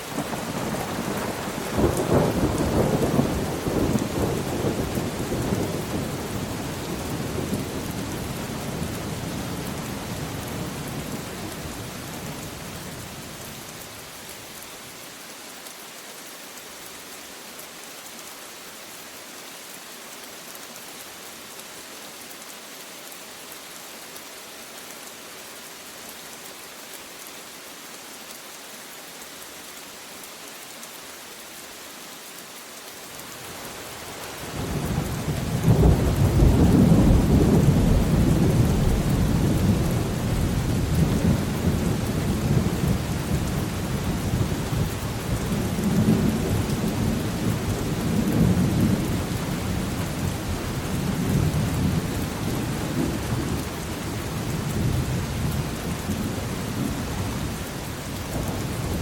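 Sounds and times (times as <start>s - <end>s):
steady rain falling: 0.0s - 59.0s
low rumbling thunder: 34.8s - 44.8s.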